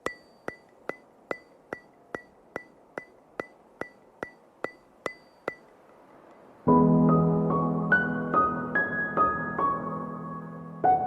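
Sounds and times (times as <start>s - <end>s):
steady ticking with ringing tone: 0.0s - 6.6s.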